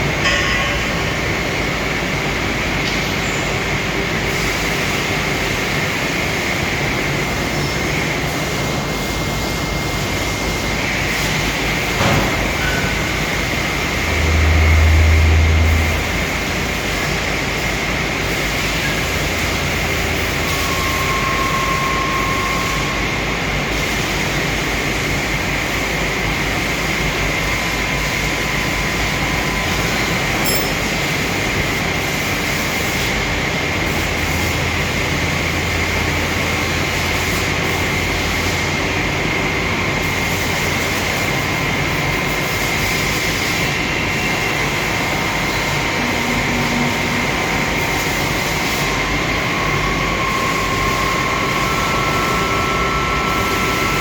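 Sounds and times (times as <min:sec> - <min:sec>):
high whine: 0:27.7 - 0:31.6, 0:43.7 - 0:54.0.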